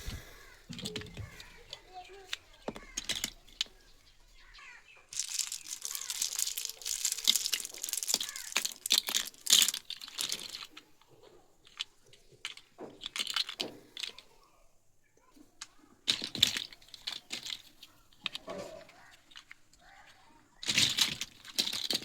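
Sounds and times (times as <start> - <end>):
plastic packaging crinkling and tearing: 4.6 - 10.6.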